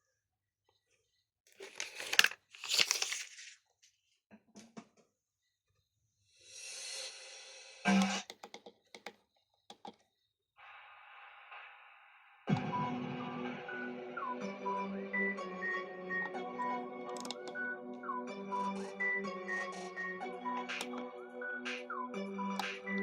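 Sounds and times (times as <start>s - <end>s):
music from car stereo: 12.5s - 23.0s.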